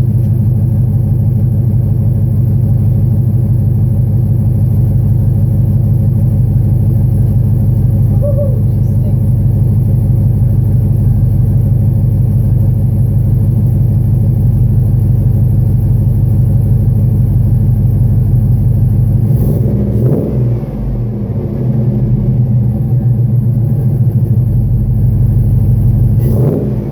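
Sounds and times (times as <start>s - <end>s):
engine idling with deep exhaust: 0.0s - 26.9s.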